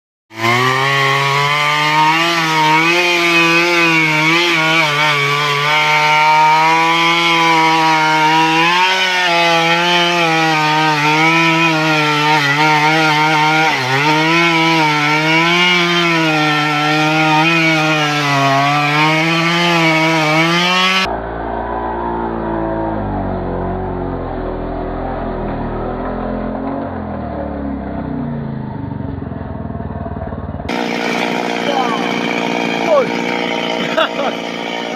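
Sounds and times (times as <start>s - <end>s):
chainsaw cutting wood: 0.3s - 21.1s, 30.7s - 34.9s.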